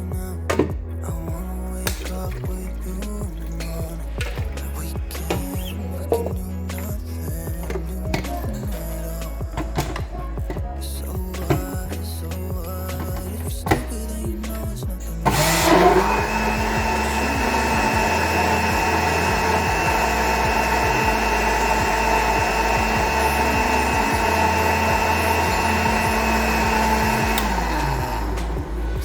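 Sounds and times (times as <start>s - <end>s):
blender running: 15.3s - 29.0s.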